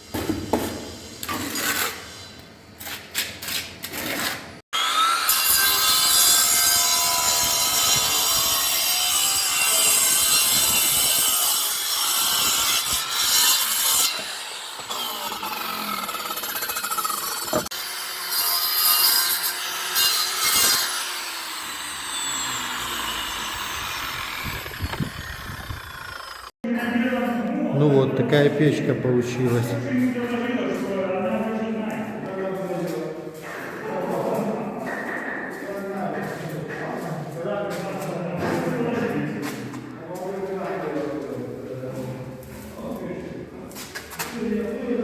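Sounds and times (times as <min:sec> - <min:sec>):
power saw cutting brick: 0:03.4 - 0:26.6.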